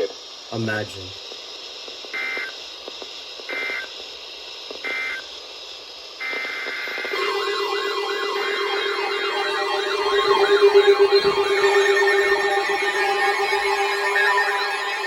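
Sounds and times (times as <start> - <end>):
brief steady tone: 7.1 - 15.0
steady low tone: 7.1 - 15.0
warbling attention tone: 7.2 - 15.0.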